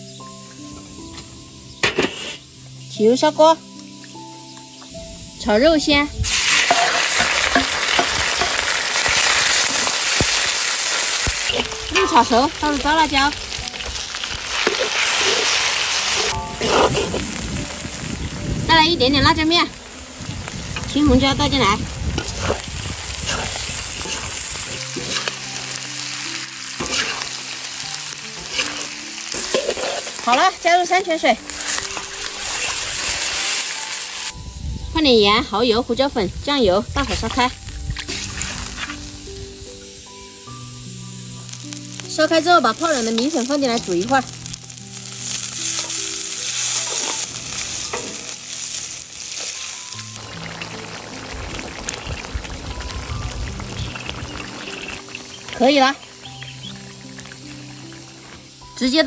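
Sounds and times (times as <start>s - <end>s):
food sizzling in hot oil: 1.6s - 2.9s, 5.8s - 59.0s
broth boiling and bubbling: 6.2s - 30.7s, 49.8s - 59.0s.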